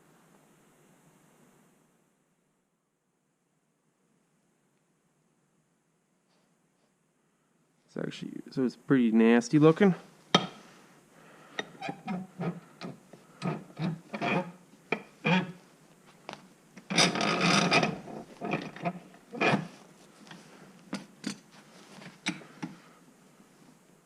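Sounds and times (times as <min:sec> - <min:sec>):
scraping corrosion off metal: 0:11.6 - 0:15.6, 0:16.8 - 0:20.5.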